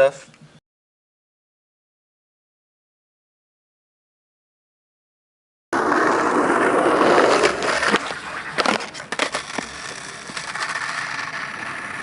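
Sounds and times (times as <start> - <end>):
skateboard wheels rolling on pavement: 5.8 - 12.0.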